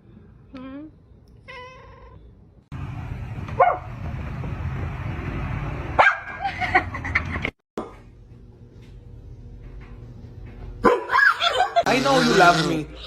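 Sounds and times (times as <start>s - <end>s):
dog barking: 3.6s - 3.9s, 6.0s - 6.4s, 10.8s - 11.3s.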